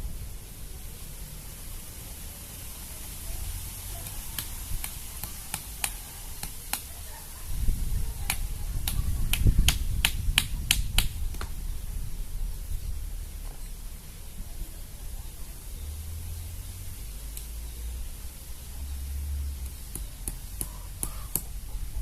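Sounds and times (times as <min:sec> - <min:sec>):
wind buffeting microphone: 0:06.2 - 0:13.8.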